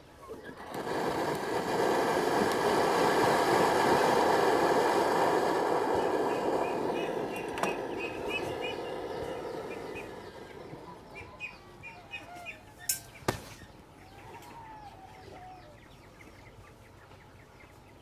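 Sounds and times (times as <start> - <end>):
small birds chirping: 5.9 - 18.0.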